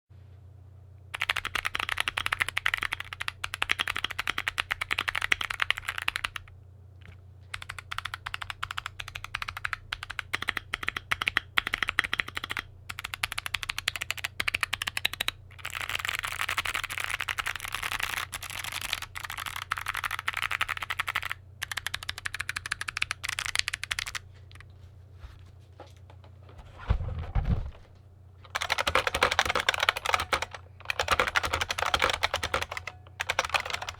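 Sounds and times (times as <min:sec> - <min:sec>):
steady low hum: 0:00.2 - 0:33.9
mechanical keyboard typing: 0:01.2 - 0:24.6, 0:28.5 - 0:33.9
low thud: 0:26.6 - 0:28.0.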